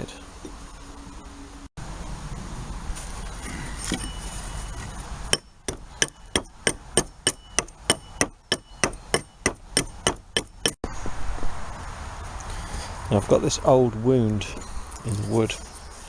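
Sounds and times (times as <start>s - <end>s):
hammer blows on metal: 5.3s - 10.8s.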